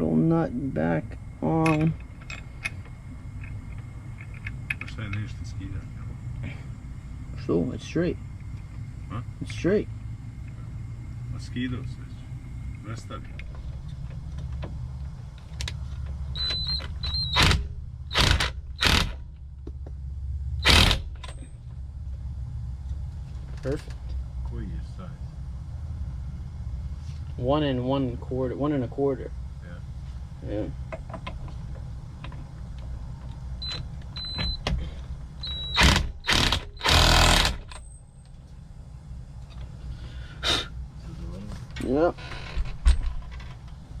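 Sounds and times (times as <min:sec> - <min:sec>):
low hum: 0:00.0 - 0:44.0
small squeaks and clicks: 0:15.4 - 0:17.5, 0:35.4 - 0:36.9
impact wrench bursts: 0:16.3 - 0:19.3, 0:20.6 - 0:21.3, 0:35.4 - 0:37.9.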